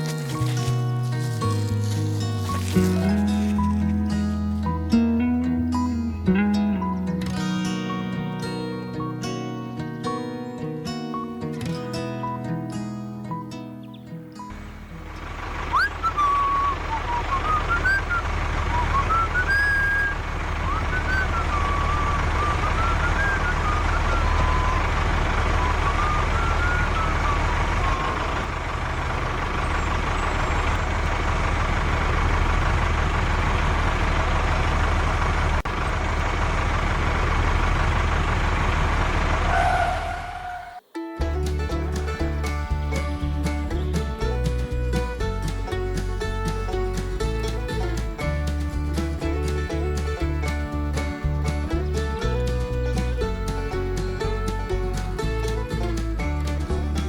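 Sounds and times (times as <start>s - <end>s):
truck engine rumble: 0.0s - 10.2s, 14.2s - 57.0s
thin wavering whistle tone: 15.7s - 24.9s.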